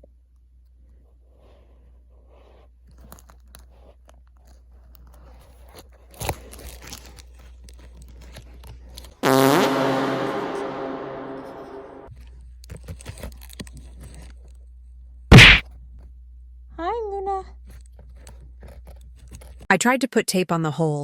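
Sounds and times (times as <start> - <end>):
held chord sound effect: 9.2 - 12.1.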